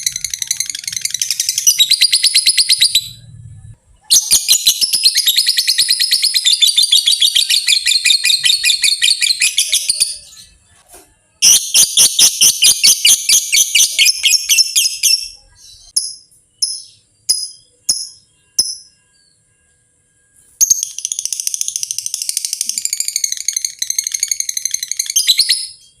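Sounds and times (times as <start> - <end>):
lovebird shrill rattling chatter: 0.0 - 2.5, 20.8 - 25.7
bird sharp chirps: 0.0 - 10.8, 11.4 - 26.0.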